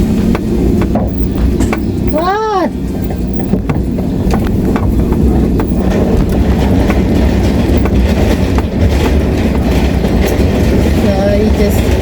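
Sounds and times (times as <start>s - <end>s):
car rumbling: 0.0s - 12.0s
light clicks and knocks: 3.0s - 11.0s.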